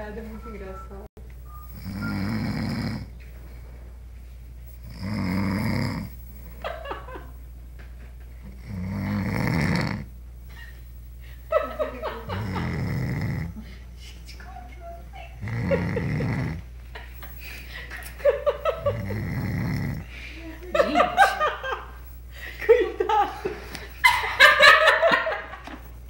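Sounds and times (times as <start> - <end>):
pet snoring: 1.7 - 3.6, 4.7 - 6.6, 8.4 - 10.1, 12.2 - 13.6, 15.4 - 16.7, 18.7 - 20.1.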